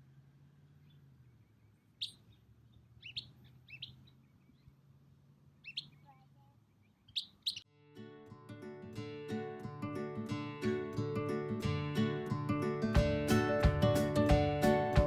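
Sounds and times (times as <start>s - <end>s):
short bird chirps: 0.8s - 4.7s, 5.6s - 6.2s, 6.8s - 7.7s
acoustic guitar music: 7.7s - 15.0s.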